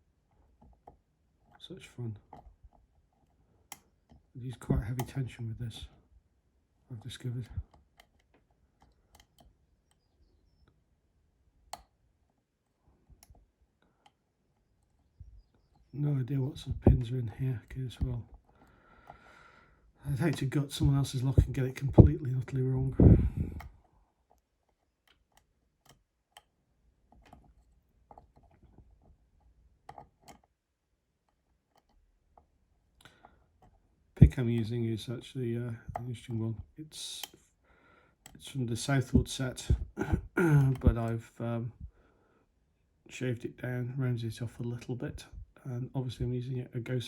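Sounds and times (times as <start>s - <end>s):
lock pick clicking: 7.7s - 10.1s, 29.8s - 30.5s.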